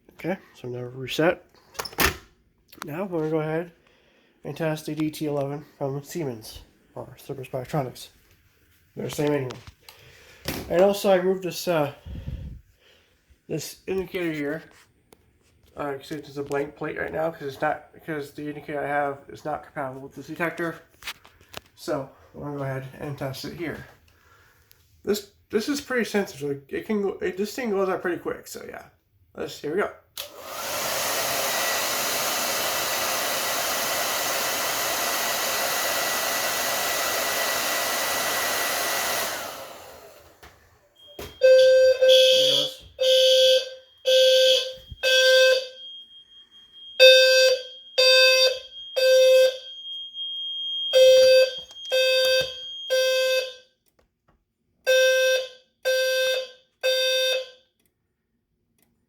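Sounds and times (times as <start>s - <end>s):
hair dryer blowing: 30.2s - 40.6s
buzzy low fire alarm tones: 41.0s - 53.8s, 54.9s - 57.7s.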